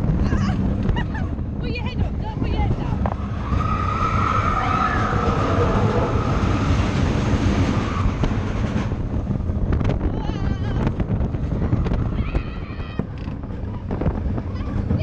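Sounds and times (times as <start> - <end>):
low rumble: 0.0 - 15.0
high wavering squeal: 3.2 - 8.9.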